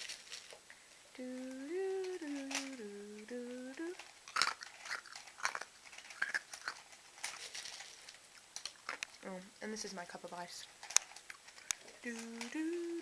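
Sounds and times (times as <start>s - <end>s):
person humming a tune: 1.2s - 4.1s, 12.0s - 13.0s
puzzle cube plastic clicks: 3.9s - 9.2s.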